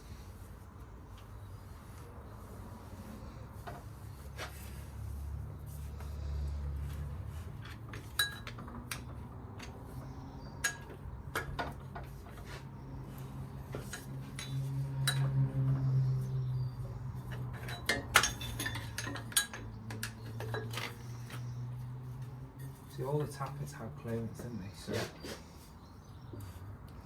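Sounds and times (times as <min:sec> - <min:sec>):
metal tools clinking: 0:07.6 - 0:09.0, 0:17.2 - 0:21.4.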